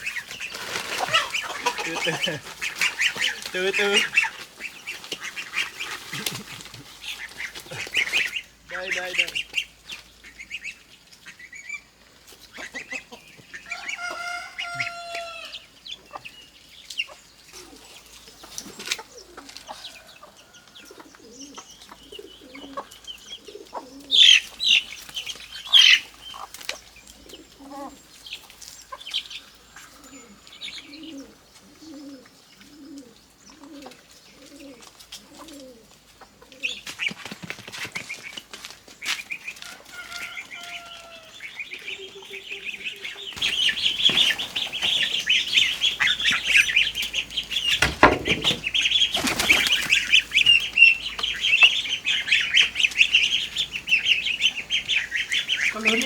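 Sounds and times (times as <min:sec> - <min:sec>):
chickens clucking: 0:00.0 - 0:37.2, 0:38.0 - 0:56.0
chicken squawks: 0:00.8 - 0:04.4.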